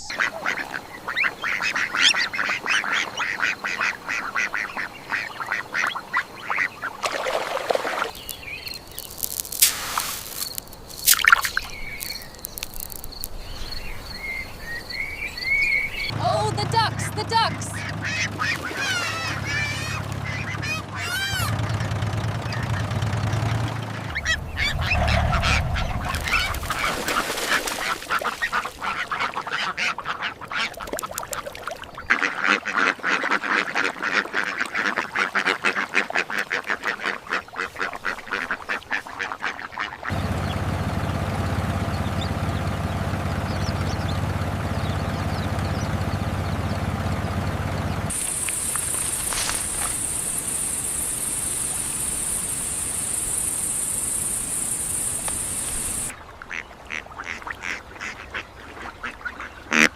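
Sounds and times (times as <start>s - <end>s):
ducks quacking: 0.0s - 8.2s, 16.2s - 41.2s, 52.0s - 59.9s
cricket trill: 7.1s - 16.1s, 48.1s - 56.1s
steady low hum: 24.0s - 27.8s, 40.1s - 56.1s.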